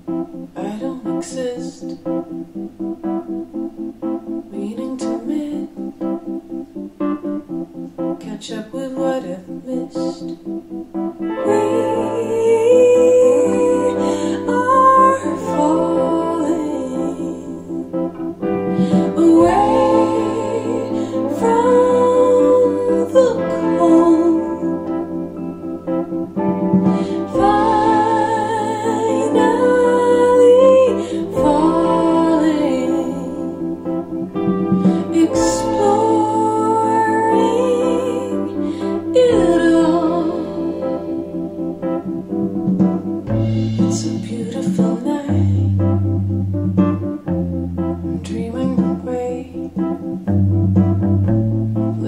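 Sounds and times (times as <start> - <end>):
woman singing: 0.6 - 2.0, 4.5 - 5.9, 8.2 - 10.4, 11.3 - 25.8, 26.9 - 41.7, 43.8 - 45.7, 48.1 - 49.8
held chords over bass: 9.5 - 52.0
plucked guitar notes: 10.7 - 52.0.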